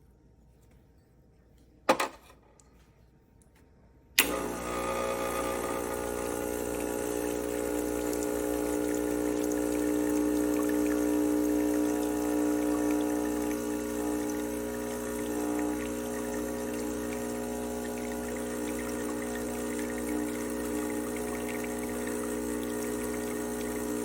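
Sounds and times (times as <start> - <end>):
click: 3.4 - 4.4
espresso machine pump buzzing: 4.2 - 24.0.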